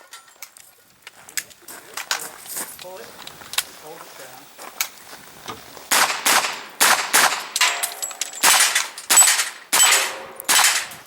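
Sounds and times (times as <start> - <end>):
carbine gunshots: 5.9 - 11.0
steel targets ringing: 5.9 - 11.0.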